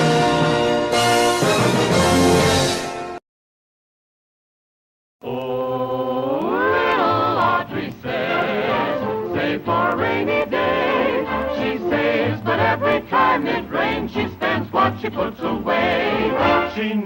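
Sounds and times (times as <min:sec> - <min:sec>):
choir singing over orchestra: 0:05.3 - 0:17.0.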